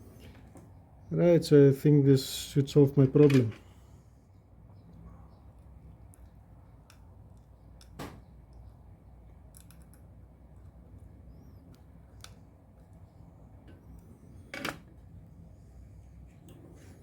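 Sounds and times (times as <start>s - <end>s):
low steady hum: 0.0s - 17.0s
small tools clicking and snipping: 9.5s - 10.1s.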